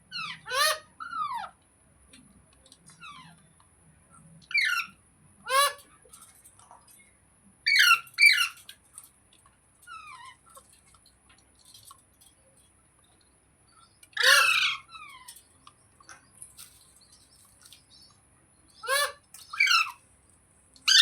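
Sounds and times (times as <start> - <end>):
parrot squawking: 0.1 - 1.5, 4.5 - 5.9, 7.7 - 8.6, 14.2 - 15.3, 18.8 - 20.0.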